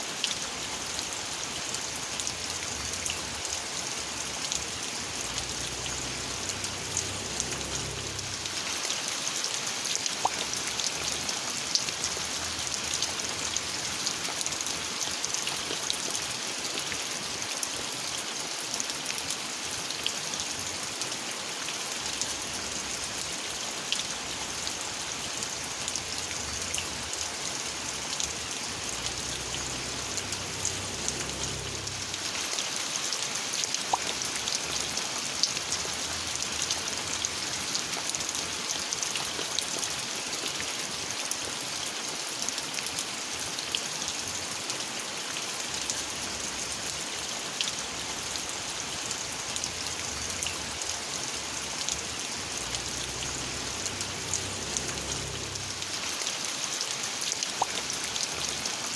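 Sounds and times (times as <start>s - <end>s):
steady rain hiss: 0.0s - 58.9s
raindrop ticks: 1.0s - 17.0s, 23.9s - 40.8s, 47.5s - 56.2s, 57.4s - 58.7s.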